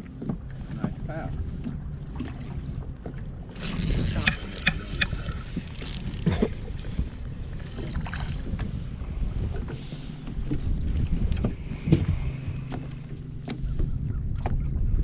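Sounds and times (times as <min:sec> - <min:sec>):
wind rumbling on microphone: 0:00.0 - 0:15.0.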